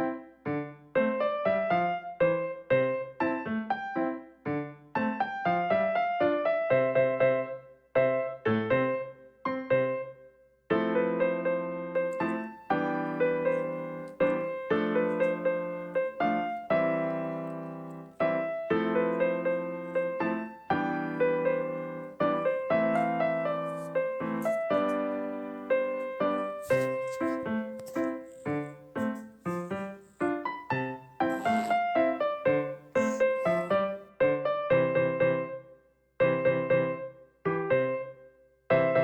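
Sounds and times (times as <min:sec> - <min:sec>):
piano music: 0:12.0 - 0:34.0.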